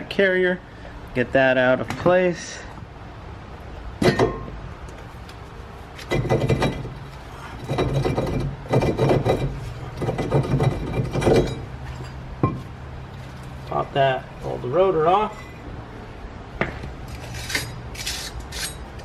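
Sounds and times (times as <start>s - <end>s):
metal scraping and rattling: 5.9s - 13.8s, 14.4s - 15.8s.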